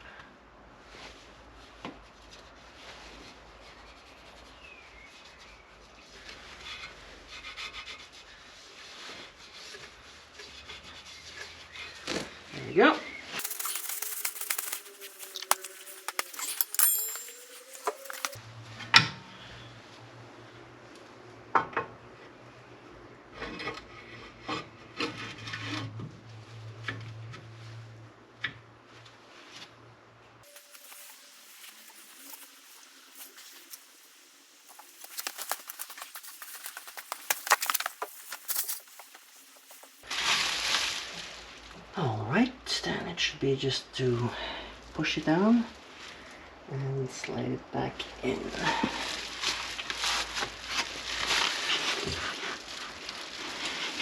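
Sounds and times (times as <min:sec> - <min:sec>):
hand rubbing grease: 0:13.4 - 0:18.4, 0:30.5 - 0:40.0.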